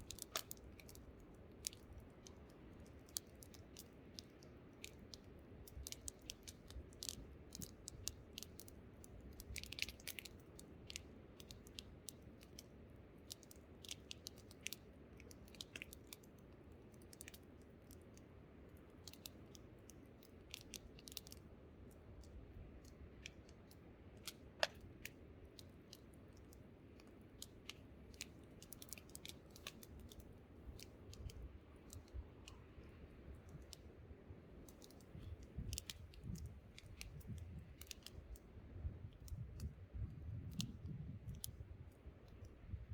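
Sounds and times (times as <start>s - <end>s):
low wind rumble: 29.6s - 42.9s
campfire crackling and popping: 34.6s - 41.6s.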